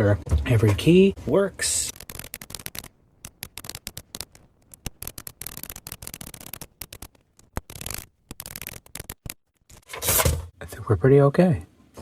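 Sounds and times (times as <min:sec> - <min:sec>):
typewriter keys clacking: 0:01.9 - 0:09.9.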